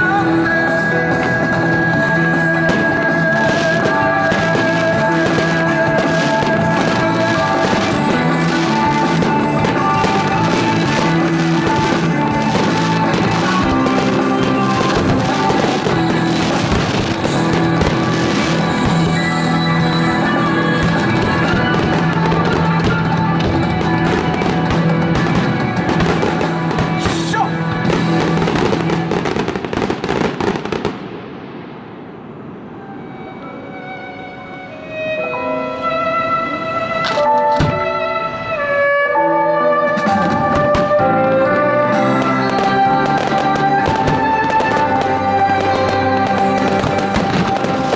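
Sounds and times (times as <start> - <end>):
rock music over loudspeakers: 0.0 - 30.3
fireworks bursting and crackling: 0.0 - 33.2, 34.9 - 39.0, 40.0 - 47.9.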